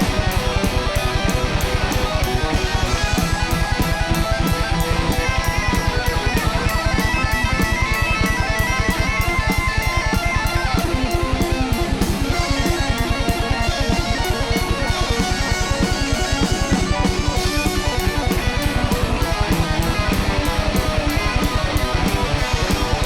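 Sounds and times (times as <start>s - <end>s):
drum kit fast beat: 0.0s - 23.0s
electric guitars: 0.0s - 23.0s.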